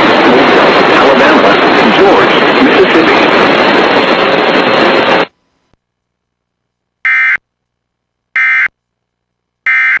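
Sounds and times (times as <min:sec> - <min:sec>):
digital data tone bursts: 0:07.1 - 0:07.4, 0:08.4 - 0:08.7, 0:09.7 - 0:10.0.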